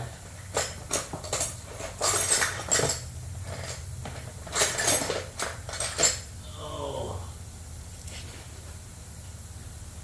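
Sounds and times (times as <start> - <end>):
metal tools clinking on engine: 0.0 - 6.4
steady low hum: 0.0 - 10.0.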